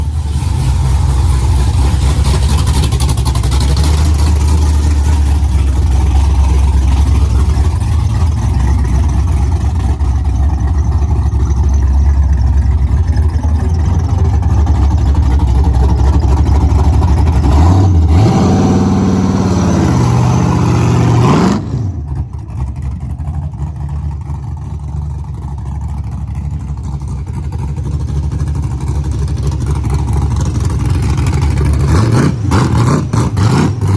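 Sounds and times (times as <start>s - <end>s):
car engine revving: 0.0s - 11.6s, 12.6s - 22.3s, 28.6s - 33.9s.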